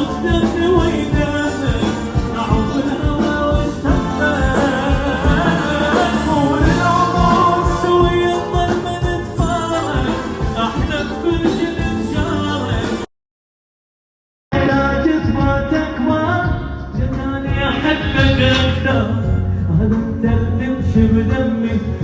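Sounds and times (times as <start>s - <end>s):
bass: 0.0s - 13.1s, 14.5s - 22.0s
drum beat: 0.0s - 13.1s.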